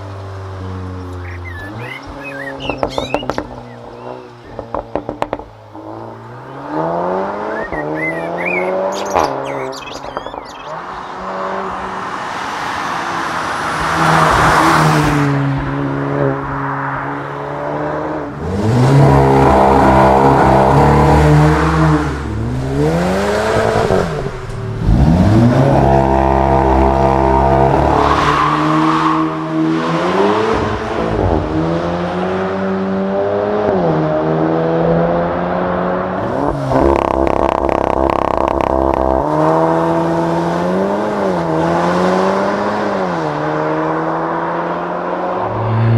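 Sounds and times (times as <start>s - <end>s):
car engine revving: 0.0s - 45.9s
exhaust crackling: 19.2s - 28.6s, 36.2s - 39.8s.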